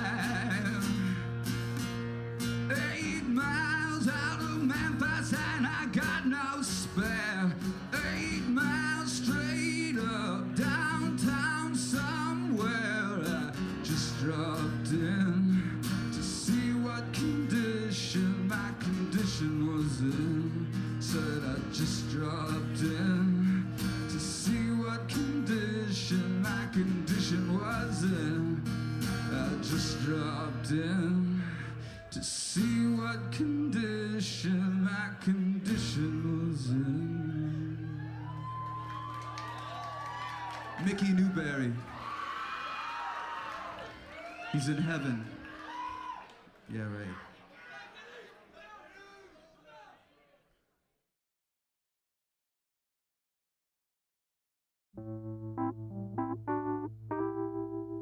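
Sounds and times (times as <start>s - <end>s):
song with guitar: 0.0s - 38.3s, 55.4s - 58.0s.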